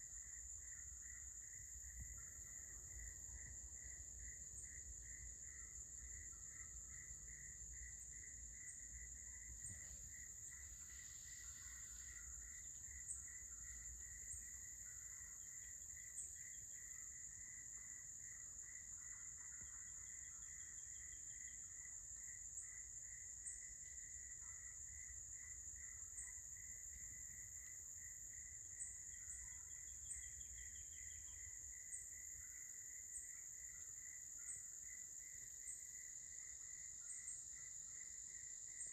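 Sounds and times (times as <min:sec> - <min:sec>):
pulsing insect trill: 0:08.6 - 0:22.8.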